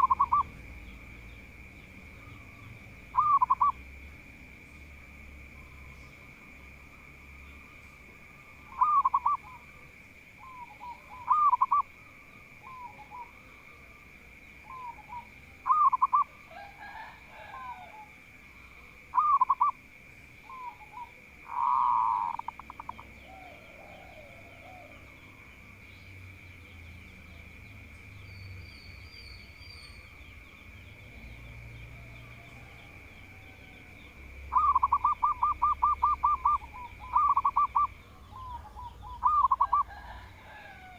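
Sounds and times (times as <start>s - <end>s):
dove cooing: 0.0s - 0.6s, 2.1s - 3.8s, 8.2s - 19.8s, 20.4s - 25.4s, 31.8s - 40.9s.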